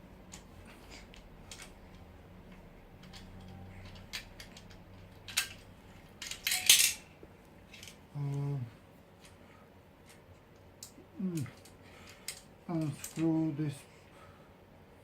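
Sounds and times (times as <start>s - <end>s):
table parts clicking and clacking: 3.0s - 7.0s.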